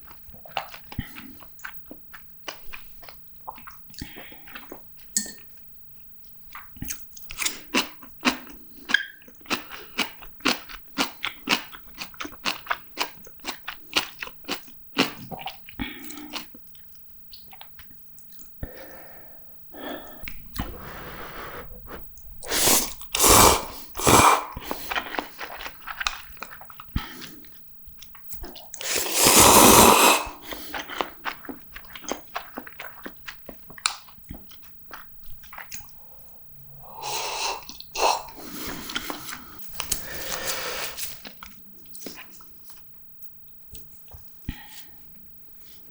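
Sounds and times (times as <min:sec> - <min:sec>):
person chewing noodles: 0:00.0 - 0:05.2, 0:06.5 - 0:36.2, 0:36.8 - 0:42.8
noisy slurping bursts: 0:22.5 - 0:25.0, 0:28.8 - 0:30.5.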